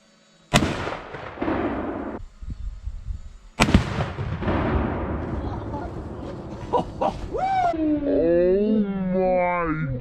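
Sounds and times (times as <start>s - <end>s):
exploding target blasts: 0.6s - 2.2s, 3.6s - 7.9s
rolling echo: 0.6s - 2.2s, 3.6s - 7.7s.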